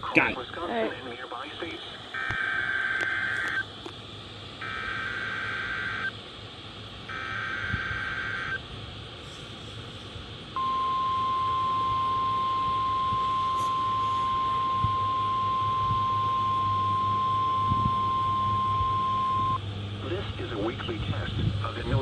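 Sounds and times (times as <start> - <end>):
rasping digital data bursts: 2.2 - 3.6, 4.6 - 6.1, 7.1 - 8.6
steady warning alarm tone: 2.2 - 3.7, 4.6 - 6.1, 7.1 - 8.6, 10.6 - 19.6.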